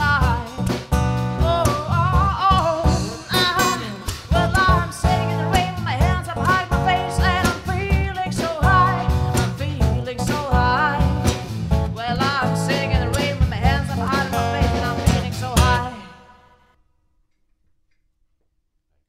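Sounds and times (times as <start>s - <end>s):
person singing: 0.0s - 16.5s
acoustic guitar strumming: 0.4s - 9.9s, 10.5s - 16.1s.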